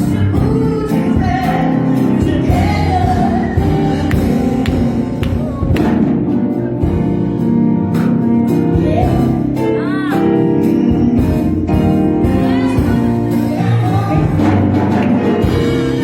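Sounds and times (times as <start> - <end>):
song with singing over instruments: 0.0 - 16.0.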